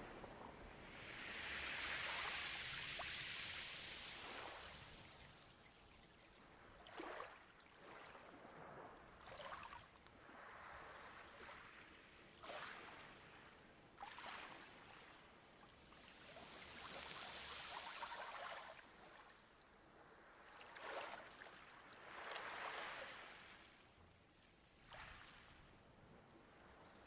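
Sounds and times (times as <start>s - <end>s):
waves washing onto pebble beach: 1.2s - 5.5s, 16.4s - 19.0s
small water splashes: 1.6s - 8.3s, 9.2s - 10.0s, 15.9s - 19.7s, 20.4s - 23.7s.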